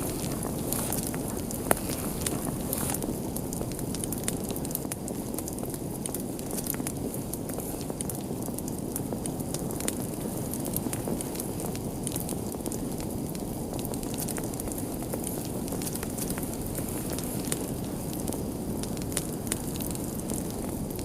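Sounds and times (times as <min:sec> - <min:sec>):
fire crackling and popping: 0:00.0 - 0:21.0
rush of flame: 0:00.0 - 0:21.0.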